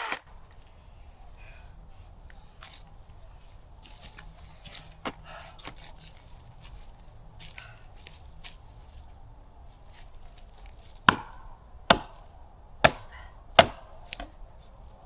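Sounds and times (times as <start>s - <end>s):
chopping strikes on wood: 11.0s - 14.4s.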